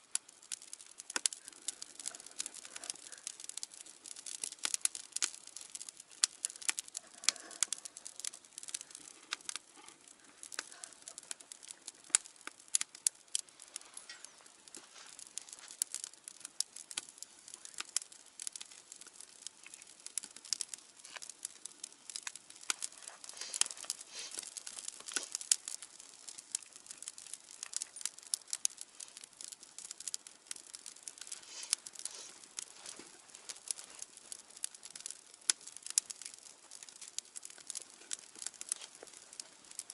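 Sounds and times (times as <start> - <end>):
wood fire popping and snapping: 0.0 - 39.9
hiss of flame: 0.2 - 36.8.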